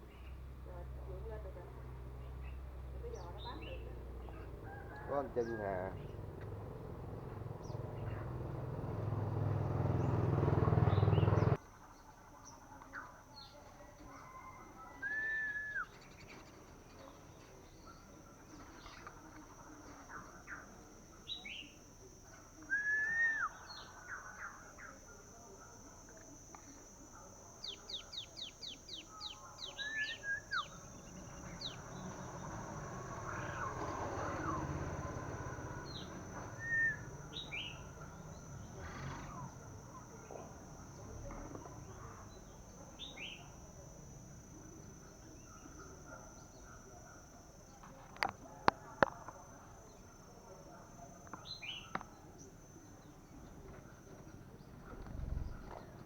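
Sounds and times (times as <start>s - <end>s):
bird whistled calls: 14.9s - 16.1s, 22.7s - 23.9s, 35.9s - 37.8s
bird ticking notes: 26.2s - 46.8s
low rumbling noise: 54.7s - 56.0s.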